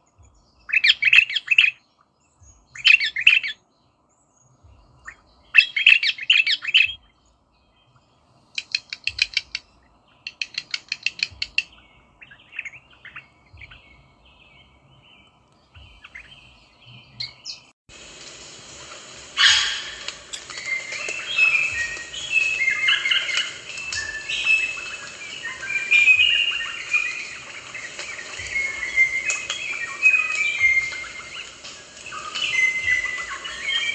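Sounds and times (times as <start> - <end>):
steady hiss: 4.5 - 11.8, 17.5 - 33.9
parrots calling: 19.2 - 33.9.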